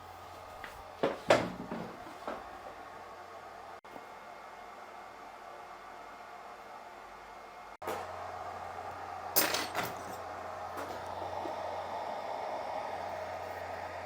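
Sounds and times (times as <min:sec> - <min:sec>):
low electrical hum: 0:00.0 - 0:14.0
hot-air station hissing: 0:08.0 - 0:14.0.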